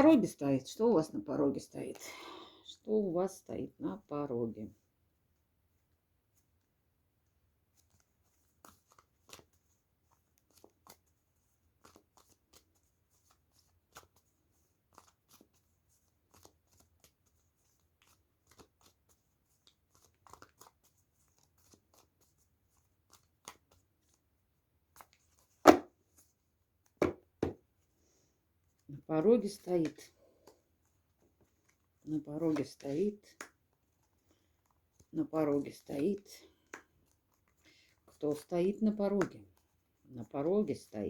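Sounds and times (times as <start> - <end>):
cards clicking while shuffled: 7.8 - 27.6, 29.4 - 38.4
cards slapping on table: 25.0 - 25.9, 26.9 - 27.6.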